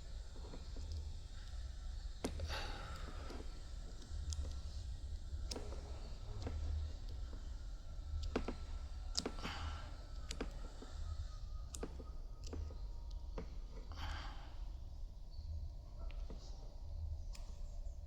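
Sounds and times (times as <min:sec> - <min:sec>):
wires clicking and rustling: 0:00.0 - 0:14.0
low steady hum: 0:00.0 - 0:18.0.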